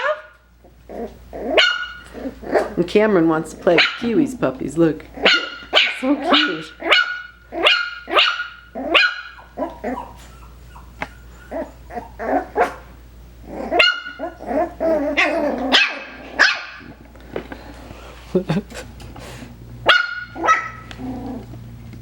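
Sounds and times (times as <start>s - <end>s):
puppies yapping: 0.0s - 2.8s, 3.6s - 4.3s, 5.0s - 16.9s, 19.8s - 21.5s.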